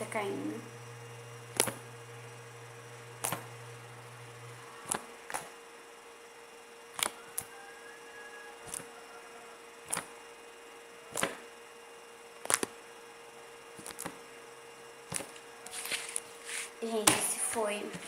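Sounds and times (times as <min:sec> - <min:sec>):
slime clicking pops: 0:01.6 - 0:01.8, 0:07.0 - 0:07.5, 0:12.4 - 0:12.7.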